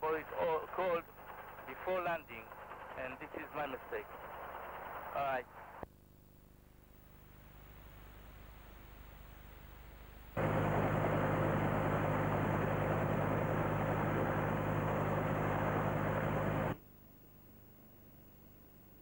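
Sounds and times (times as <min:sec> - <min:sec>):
helicopter engine and rotor drone: 0:10.4 - 0:16.8.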